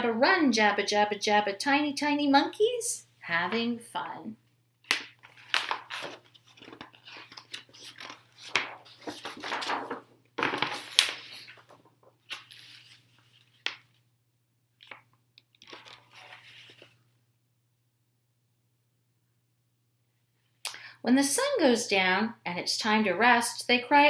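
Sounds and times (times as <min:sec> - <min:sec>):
paper rustling and crinkling: 0:04.9 - 0:14.0, 0:14.8 - 0:17.0.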